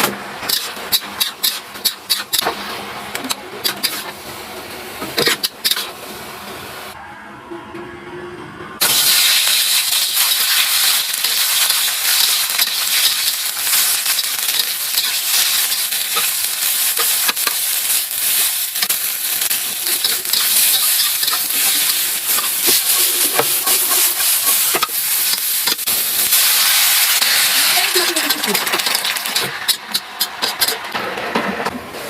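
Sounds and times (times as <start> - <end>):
food sizzling in hot oil: 8.8 - 30.8.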